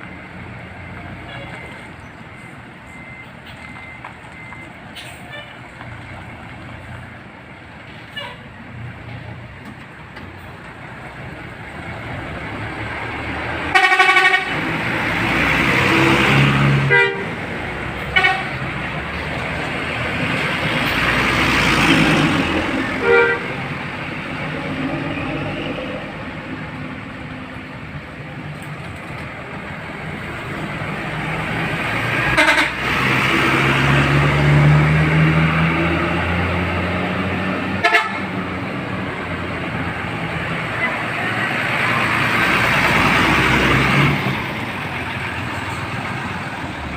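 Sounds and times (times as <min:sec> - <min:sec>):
musical bus horn blasts: 0:08.1 - 0:08.5, 0:13.7 - 0:14.6, 0:16.8 - 0:17.4, 0:18.1 - 0:18.6, 0:23.0 - 0:23.6, 0:32.2 - 0:32.9, 0:37.8 - 0:38.4.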